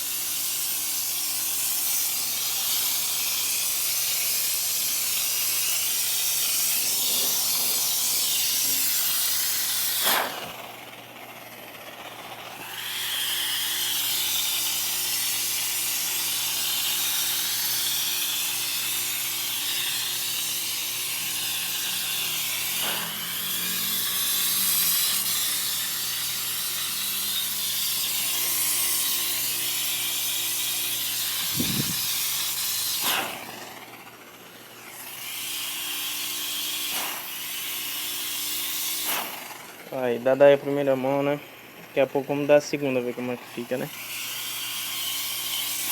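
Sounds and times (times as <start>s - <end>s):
paint spray gun hissing: 0.0s - 10.7s, 12.2s - 45.9s
compressor low hum: 2.1s - 13.8s, 18.6s - 29.7s, 31.2s - 35.0s.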